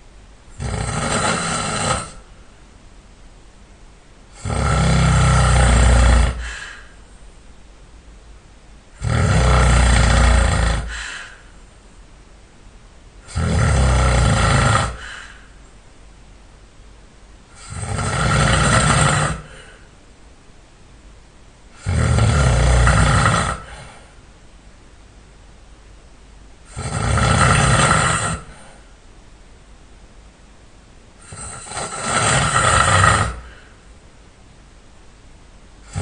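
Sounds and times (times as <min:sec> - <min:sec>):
person snoring loudly: 0:00.5 - 0:02.3, 0:04.3 - 0:07.0, 0:09.0 - 0:11.4, 0:13.2 - 0:15.5, 0:17.5 - 0:19.9, 0:21.7 - 0:24.0, 0:26.7 - 0:28.8, 0:31.2 - 0:33.8
quiet breathing: 0:04.3 - 0:07.4, 0:09.2 - 0:12.1, 0:13.2 - 0:15.8, 0:17.5 - 0:20.0, 0:21.7 - 0:24.4, 0:26.6 - 0:29.0, 0:31.2 - 0:34.0.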